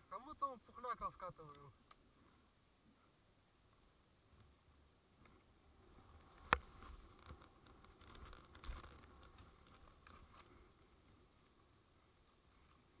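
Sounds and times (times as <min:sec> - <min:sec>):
faint clicks and knocks: 0:06.1 - 0:10.7.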